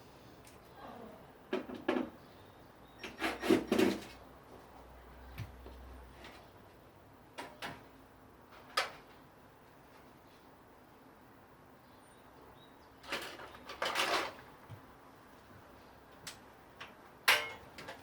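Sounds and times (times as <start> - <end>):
objects knocking and clattering: 13.0 - 14.4, 17.3 - 18.0.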